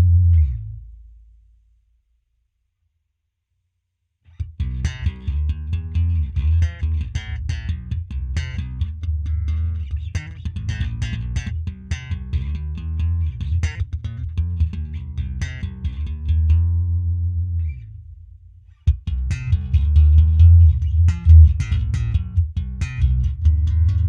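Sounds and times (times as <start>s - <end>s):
electric bass guitar plucked notes: 0.0s - 1.4s, 4.4s - 24.0s.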